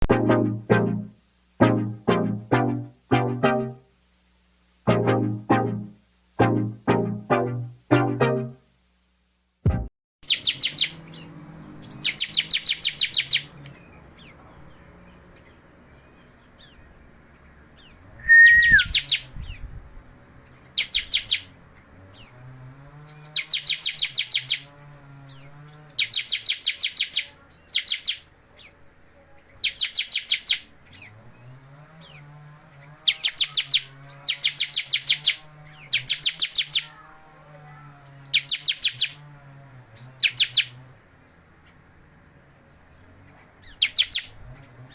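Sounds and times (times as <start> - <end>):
thump: 9.7 - 9.9
bird singing high chirps: 10.2 - 11.0, 11.8 - 13.5, 18.2 - 19.2, 20.8 - 21.4, 23.2 - 24.6, 25.8 - 28.2, 29.6 - 30.6, 33.1 - 36.9, 38.1 - 39.1, 43.7 - 44.3
short whistle: 18.2 - 18.9.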